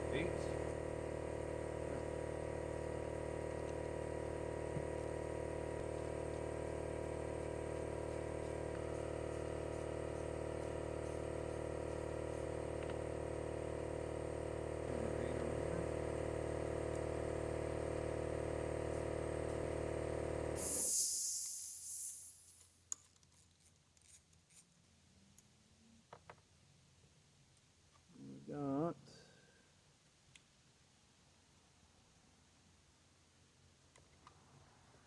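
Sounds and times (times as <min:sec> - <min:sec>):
motor droning: 0:00.0 - 0:22.4.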